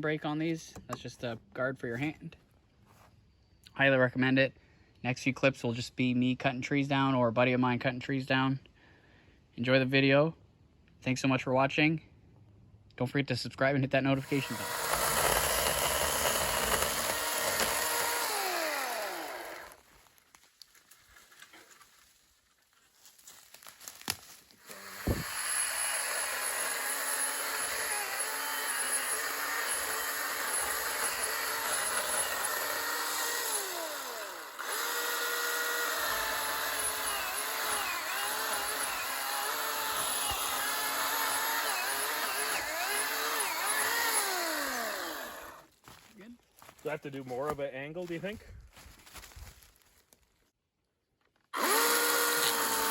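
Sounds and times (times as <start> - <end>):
battery chainsaw running: 14.2 - 19.8, 24.6 - 45.6, 51.6 - 52.9.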